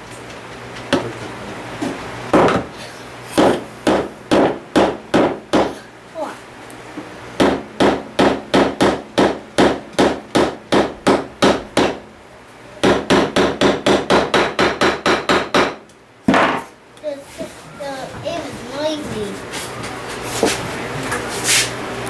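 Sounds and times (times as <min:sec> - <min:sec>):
hammer driving nails into wood: 0:02.3 - 0:02.7, 0:03.4 - 0:05.8, 0:07.4 - 0:12.0, 0:12.8 - 0:16.7.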